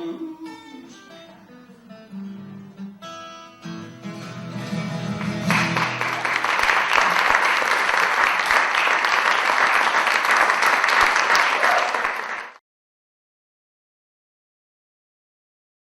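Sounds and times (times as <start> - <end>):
guitar chord: 0.0 - 6.2
audience applauding: 4.6 - 12.6.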